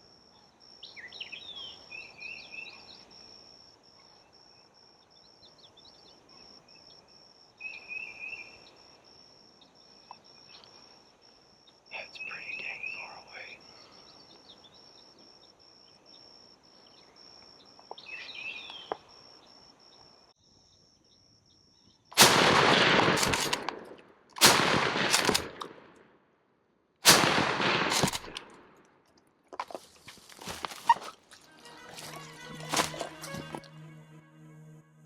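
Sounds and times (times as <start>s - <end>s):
bird chirps: 11.6s - 19.1s
shotgun shots with echo: 22.2s - 25.9s, 27.0s - 28.7s.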